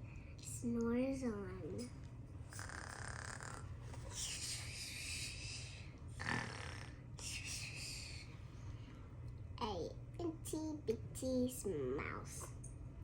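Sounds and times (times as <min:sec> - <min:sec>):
child imitating snoring: 0:02.5 - 0:03.7, 0:06.2 - 0:07.0.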